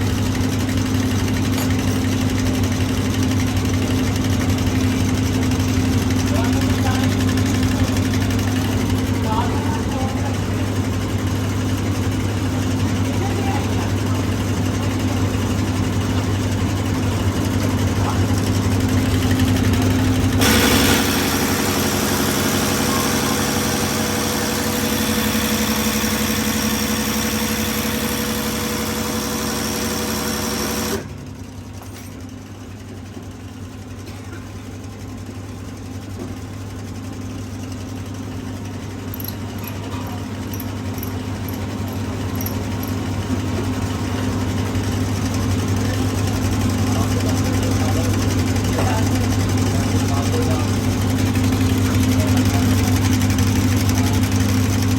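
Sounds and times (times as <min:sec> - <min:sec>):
louder fuller machine noise: 0:12.6 - 0:31.3, 0:40.5 - 0:54.9
machinery humming: 0:19.8 - 0:31.1.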